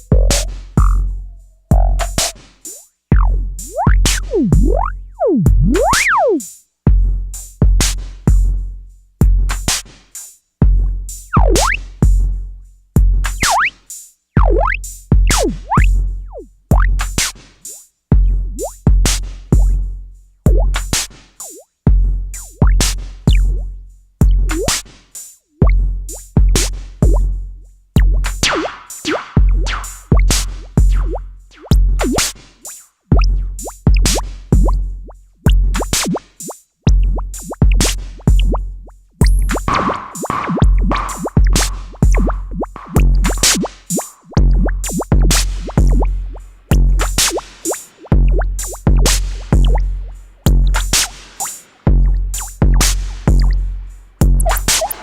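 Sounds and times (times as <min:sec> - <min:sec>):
distorted drum machine beat: 0:00.0 - 0:06.5, 0:10.7 - 0:12.3, 0:13.0 - 0:13.7, 0:14.4 - 0:19.9, 0:20.5 - 0:21.6, 0:22.2 - 0:24.9, 0:25.6 - 0:55.0
deep booming kicks: 0:03.1 - 0:05.9, 0:36.9 - 0:43.6
sweeping pitched blips: 0:03.2 - 0:06.1, 0:14.4 - 0:16.9, 0:24.5 - 0:24.8, 0:54.4 - 0:55.0
noisy hat and snare hits: 0:39.2 - 0:44.2, 0:47.0 - 0:47.9, 0:50.7 - 0:51.7, 0:54.2 - 0:55.0.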